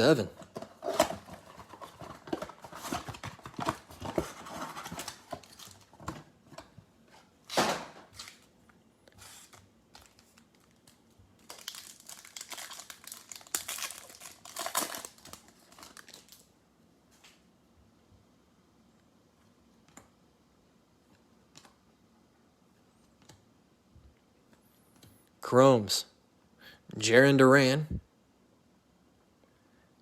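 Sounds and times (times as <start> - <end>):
plastic packaging crinkling: 0.4 - 6.1, 9.2 - 16.5.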